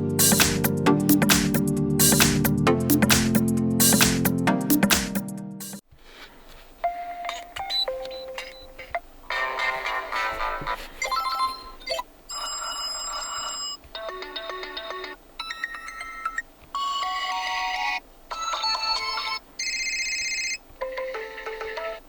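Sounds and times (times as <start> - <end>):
phone ringtone melodies: 6.8 - 10.0, 11.0 - 22.0.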